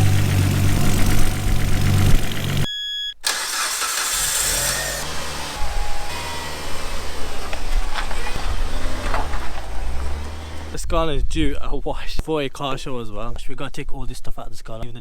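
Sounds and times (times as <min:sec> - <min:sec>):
car engine idling: 0:00.0 - 0:02.7, 0:03.3 - 0:10.8.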